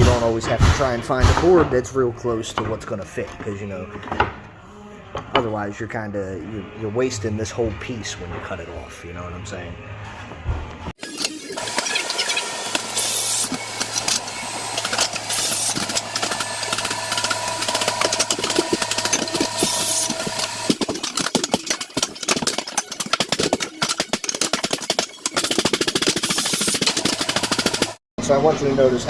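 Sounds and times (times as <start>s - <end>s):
power tool motor humming: 11.0s - 28.0s
fast rattling clicks: 11.8s - 28.0s.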